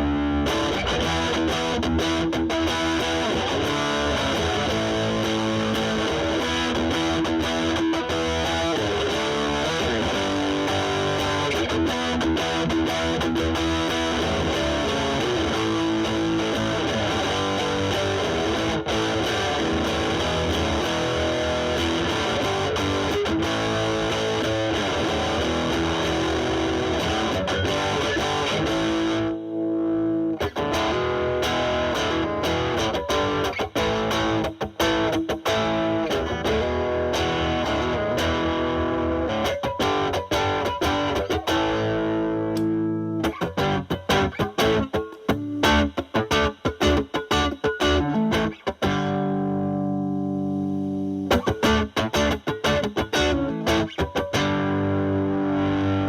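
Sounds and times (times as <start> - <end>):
distorted electric guitar: 0.0 - 56.0.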